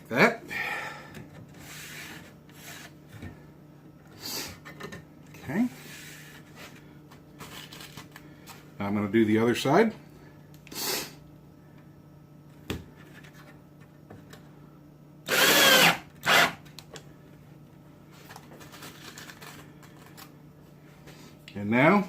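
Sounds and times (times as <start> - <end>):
cordless drill driving screws: 15.3 - 16.6.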